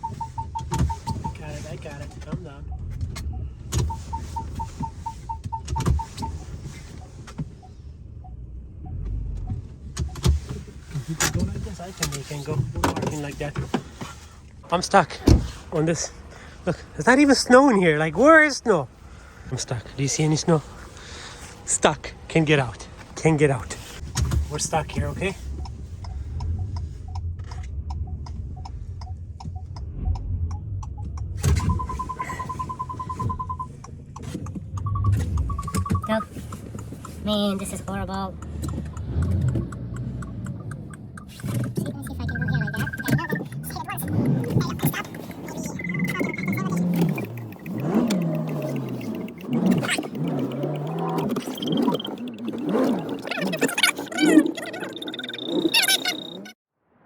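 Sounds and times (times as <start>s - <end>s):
parking sensor beeping: 0.0s - 13.6s, 23.8s - 56.6s
engine running: 24.8s - 56.4s
sharp regular ticking: 25.6s - 56.5s.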